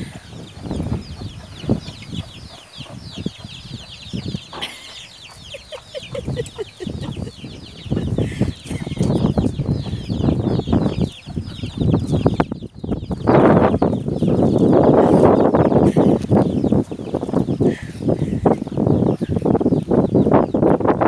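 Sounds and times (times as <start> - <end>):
chickens clucking: 0.0 - 21.0.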